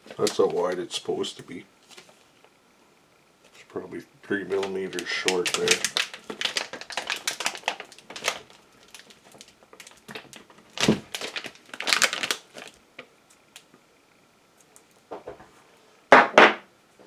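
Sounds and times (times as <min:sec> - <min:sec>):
packaging crinkling and rustling: 0:00.0 - 0:00.9, 0:04.5 - 0:13.7.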